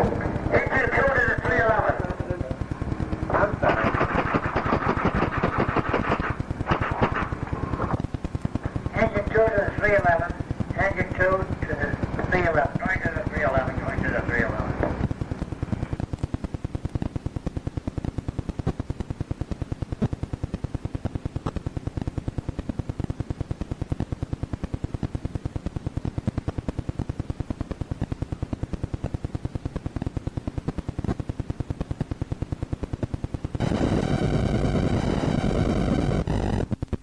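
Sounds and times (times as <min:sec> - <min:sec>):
fast mechanical clicking: 0:00.0 - 0:37.0.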